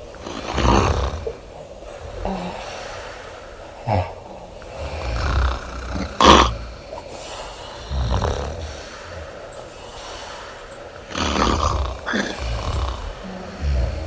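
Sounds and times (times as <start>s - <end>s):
woman snoring loudly: 0.2s - 1.4s, 3.9s - 6.8s, 7.8s - 9.3s, 11.1s - 14.0s.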